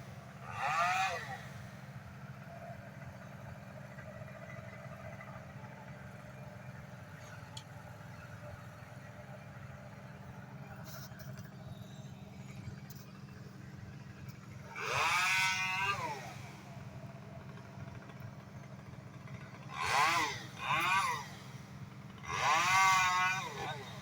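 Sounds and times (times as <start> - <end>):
engine revving: 0.0 - 2.4, 14.3 - 24.0.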